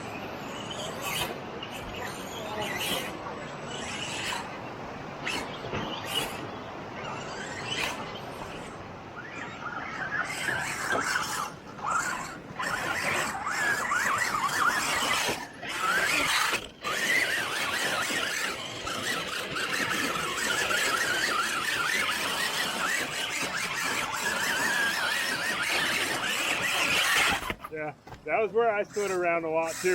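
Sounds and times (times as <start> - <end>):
electric motor whining: 0.0 - 29.9.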